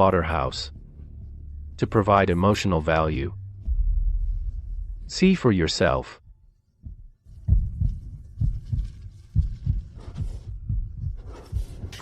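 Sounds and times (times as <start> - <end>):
heartbeat thumps: 3.4 - 5.4, 6.2 - 12.0.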